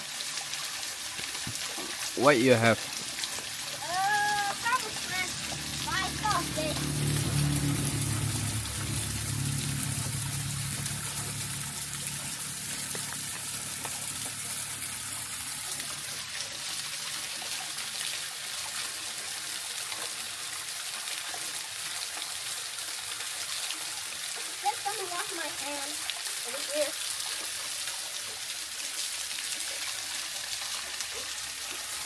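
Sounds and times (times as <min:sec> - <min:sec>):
river water trickling: 0:00.0 - 0:32.0
low rumble: 0:05.3 - 0:13.7.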